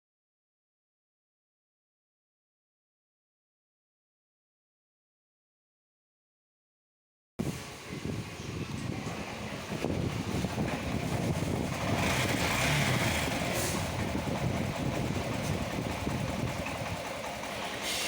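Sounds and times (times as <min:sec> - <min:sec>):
motorcycle engine idling: 0:07.7 - 0:18.0.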